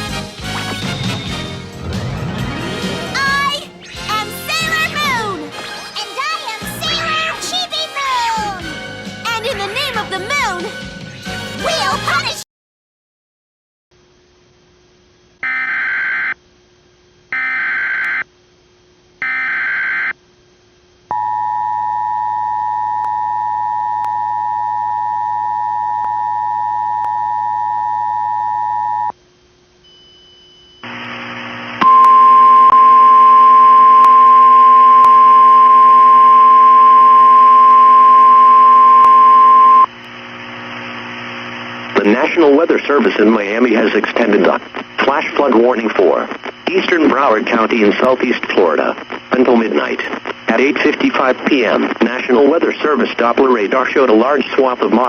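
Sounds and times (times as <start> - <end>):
two-tone attention signal: 31.8 - 39.9.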